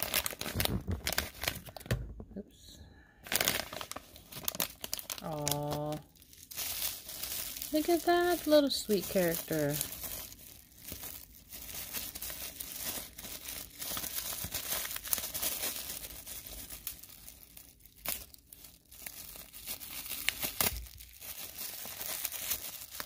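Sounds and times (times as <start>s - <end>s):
packaging crinkling and tearing: 0.0s - 2.2s, 3.2s - 23.0s.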